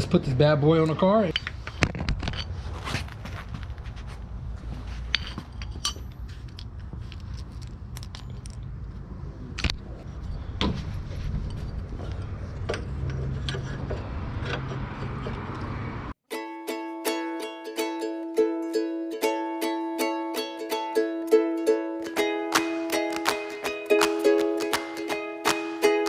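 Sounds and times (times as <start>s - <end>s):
metal parts clinking: 5.1s - 8.7s
ukulele music: 16.3s - 26.0s.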